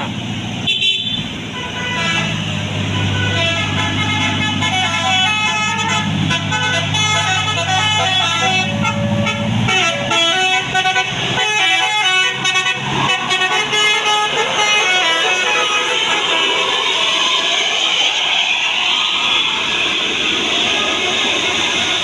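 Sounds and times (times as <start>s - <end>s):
multi-note bus horn tune: 0.0s - 16.7s
bus engine running: 0.0s - 22.0s.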